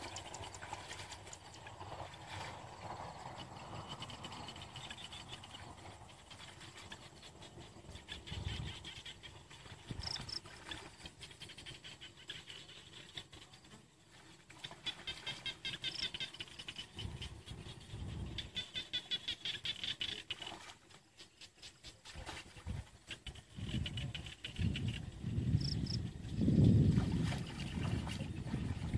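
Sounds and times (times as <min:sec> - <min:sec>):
insects chirping: 0:09.9 - 0:10.5, 0:24.7 - 0:26.1.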